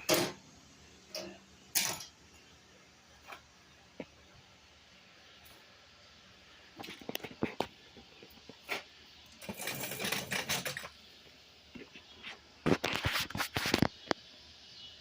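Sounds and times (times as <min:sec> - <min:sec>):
steel parts clattering: 0:01.1 - 0:02.2, 0:09.4 - 0:10.9
steel parts scraping: 0:09.4 - 0:10.9.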